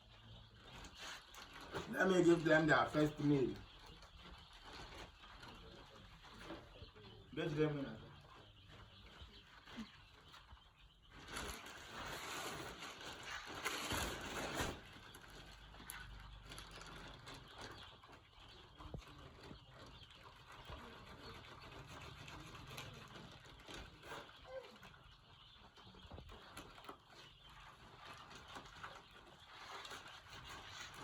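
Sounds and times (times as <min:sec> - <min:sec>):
chicks cheeping: 0:00.0 - 0:31.0
loud noisy rustle: 0:11.2 - 0:15.4.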